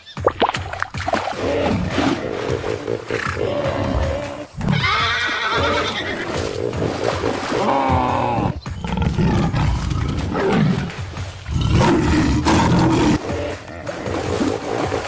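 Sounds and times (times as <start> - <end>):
large animal roaring: 7.4 - 14.5.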